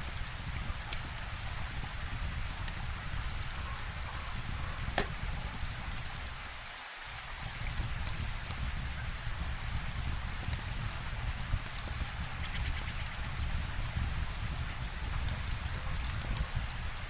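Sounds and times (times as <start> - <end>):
steady rainfall: 0.0 - 17.0
wood fire crackling: 0.0 - 17.0.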